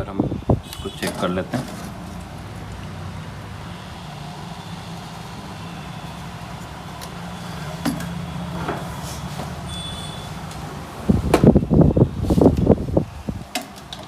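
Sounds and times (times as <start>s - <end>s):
faint high-pitched beep: 9.7s - 10.3s.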